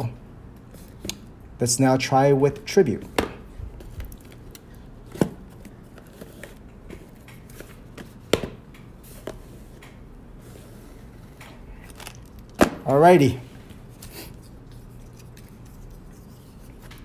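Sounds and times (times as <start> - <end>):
hands opening a card box: 11.8 - 12.8.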